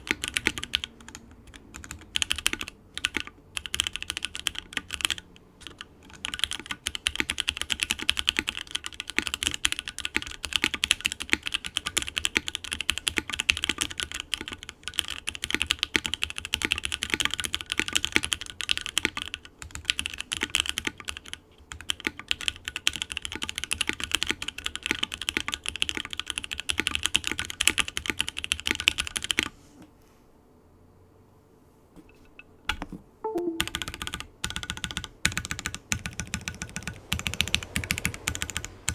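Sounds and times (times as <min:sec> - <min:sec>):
fast typing on mechanical keyboard: 0:00.0 - 0:29.5, 0:33.5 - 0:38.9.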